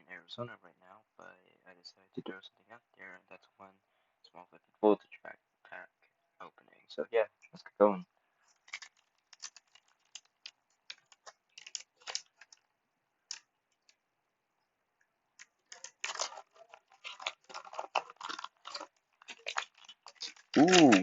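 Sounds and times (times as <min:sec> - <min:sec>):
foil pack crinkling: 0:08.5 - 0:12.7, 0:15.4 - 0:21.0
foil pack tearing: 0:08.6 - 0:10.3, 0:10.9 - 0:12.6, 0:15.7 - 0:21.0.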